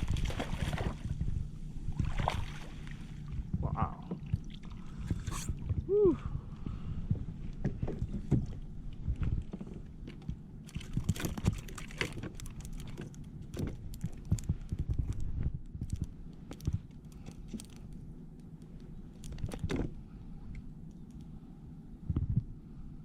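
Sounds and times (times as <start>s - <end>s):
fishing gear clicking and rattling: 10.0s - 18.0s.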